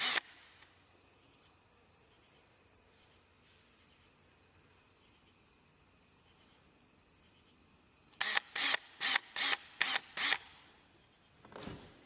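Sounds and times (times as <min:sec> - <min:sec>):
sharp mechanical rasps: 0:00.0 - 0:00.4, 0:08.2 - 0:10.6.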